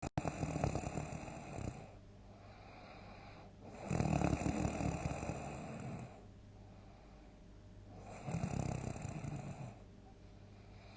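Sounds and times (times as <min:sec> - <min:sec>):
person snoring loudly: 0:00.2 - 0:01.9, 0:03.7 - 0:06.2, 0:08.0 - 0:09.8.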